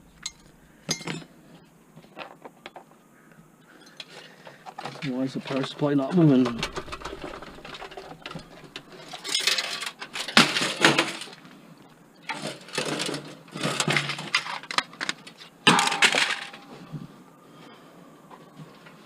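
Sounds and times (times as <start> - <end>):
computer case sheet metal rattling: 5.5 - 11.3.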